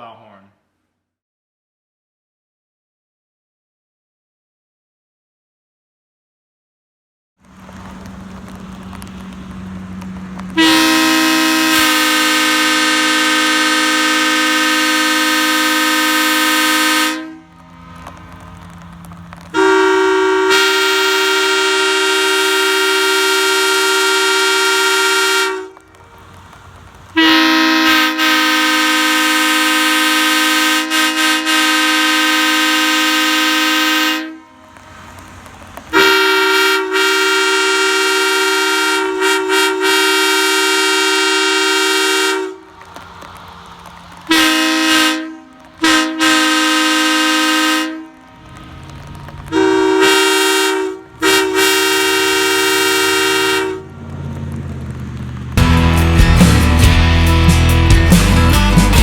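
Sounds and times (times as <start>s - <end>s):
train air horn blasts: 10.6s - 17.7s, 19.5s - 26.3s, 27.2s - 35.2s, 35.9s - 43.0s, 44.2s - 48.8s, 49.5s - 54.0s.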